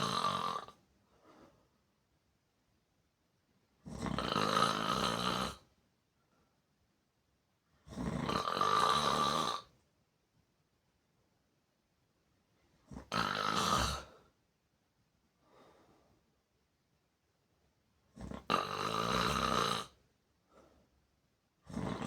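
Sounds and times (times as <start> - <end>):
person snoring loudly: 0.0 - 0.8, 3.8 - 5.6, 7.9 - 9.7, 12.9 - 14.2, 18.2 - 20.0, 21.7 - 22.0
quiet breathing: 0.0 - 2.0, 15.3 - 16.5, 19.9 - 21.1.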